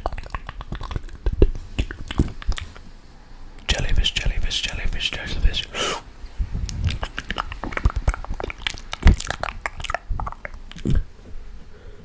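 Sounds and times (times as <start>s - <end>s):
wet mouth clicks and pops: 0.0s - 2.9s, 6.7s - 11.1s.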